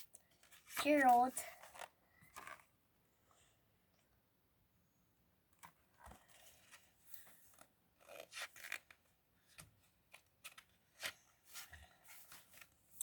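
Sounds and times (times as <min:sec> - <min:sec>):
paper pages rustling and turning: 0:00.0 - 0:02.7, 0:05.6 - 0:13.0.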